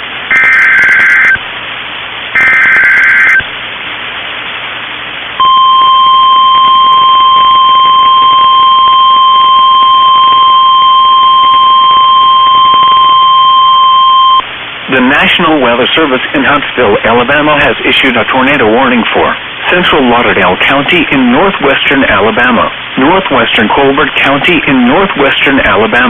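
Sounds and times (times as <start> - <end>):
radio hiss: 0.3 - 1.4, 2.3 - 3.6, 14.8 - 26.0
steady alarm beep: 0.3 - 1.4, 2.4 - 3.5, 5.4 - 14.4
warbling digital data bursts: 0.3 - 1.4, 2.4 - 3.4.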